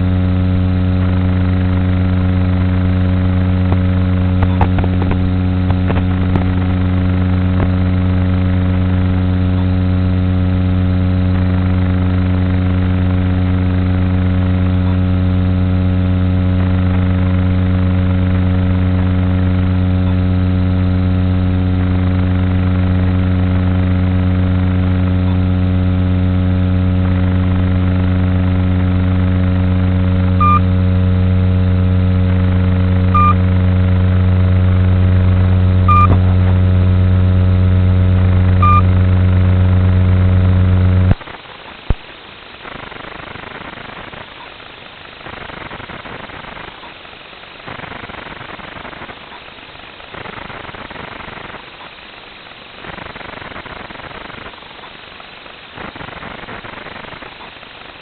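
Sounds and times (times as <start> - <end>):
steady low buzz: 0.0 - 44.1.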